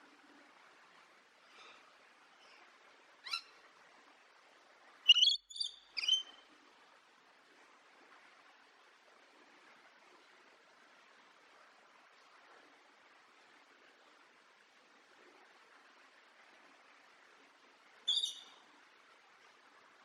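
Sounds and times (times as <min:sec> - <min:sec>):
faint background hiss: 0:00.0 - 0:20.0
parrot calling: 0:05.1 - 0:06.3, 0:18.1 - 0:18.4.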